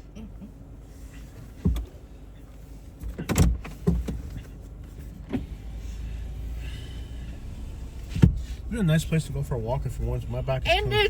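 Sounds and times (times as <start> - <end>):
car cabin rumble: 0.0 - 11.0
short thumps and knocks: 1.6 - 1.9.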